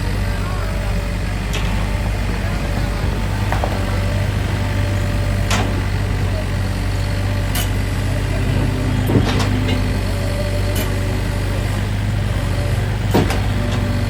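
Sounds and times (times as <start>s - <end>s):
diesel engine running: 0.0s - 14.0s
sharp knocks: 1.5s - 7.7s.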